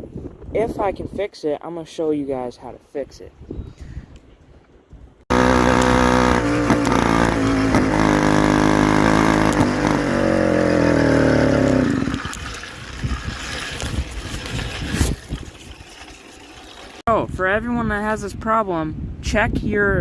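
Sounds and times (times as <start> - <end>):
two-stroke engine running: 5.3 - 17.0.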